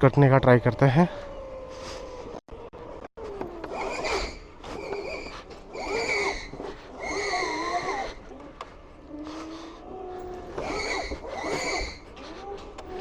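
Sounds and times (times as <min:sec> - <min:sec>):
scooter tyre squealing: 0:03.4 - 0:08.2, 0:10.5 - 0:13.0.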